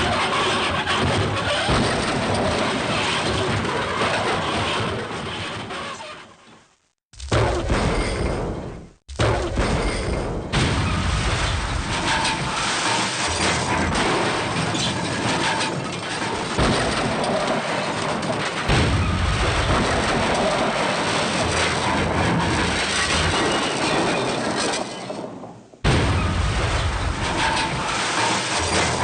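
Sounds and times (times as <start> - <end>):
deep boom: 7.2 - 12.7, 18.7 - 20.8, 25.8 - 28.0
dense rumbling crash: 7.2 - 24.5, 25.2 - 29.0.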